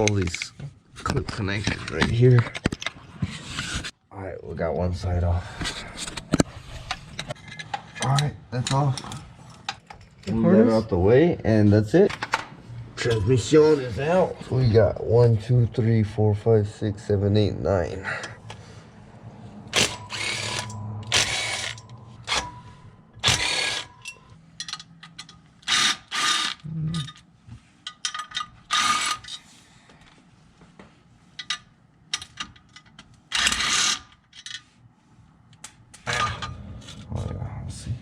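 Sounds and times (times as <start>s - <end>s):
power wrench spinning bolts: 19.7s - 26.6s, 28.0s - 29.4s, 33.3s - 34.2s.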